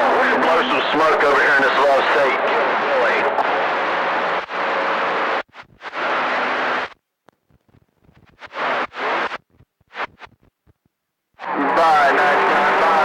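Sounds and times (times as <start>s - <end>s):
radio static bursts: 0.0s - 7.0s, 8.0s - 10.5s.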